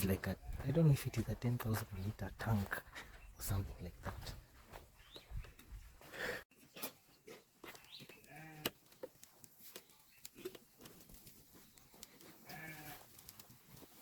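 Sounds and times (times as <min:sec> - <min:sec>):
goats and sheep bleating: 0:08.1 - 0:09.0, 0:12.2 - 0:13.1.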